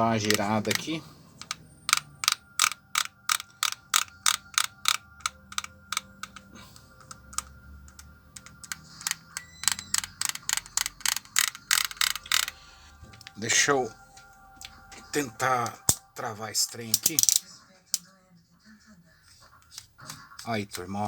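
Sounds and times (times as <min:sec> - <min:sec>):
drill gearbox clicking: 0:00.2 - 0:12.6.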